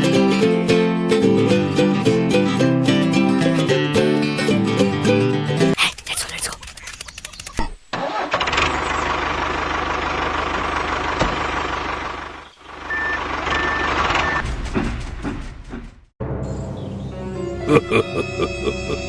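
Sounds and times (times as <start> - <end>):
heavy vehicle engine running: 8.0 - 16.1
reversing alarm beeping: 12.9 - 14.4.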